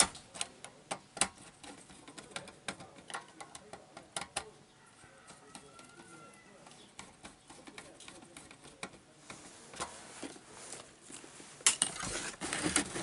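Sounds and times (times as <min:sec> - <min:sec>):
wires and terminals clicking: 0:00.0 - 0:04.6, 0:05.2 - 0:09.9.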